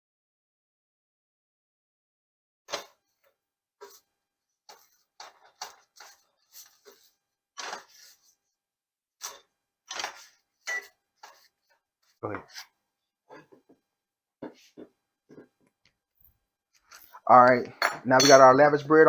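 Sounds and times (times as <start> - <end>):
scraping in skillet: 3.8 - 4.1, 4.7 - 8.4.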